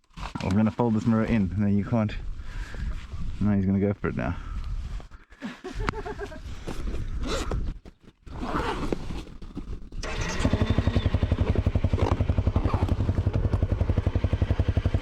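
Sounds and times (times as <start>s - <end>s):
motorcycle engine idling: 10.0s - 15.0s.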